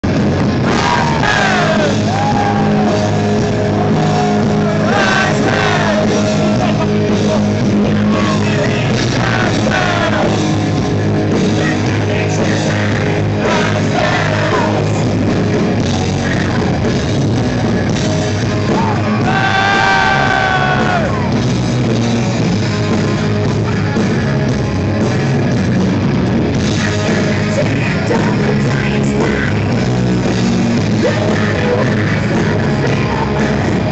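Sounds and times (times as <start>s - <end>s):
rock band playing: 0.0s - 33.9s
person singing and shouting: 0.7s - 7.2s, 7.8s - 10.4s.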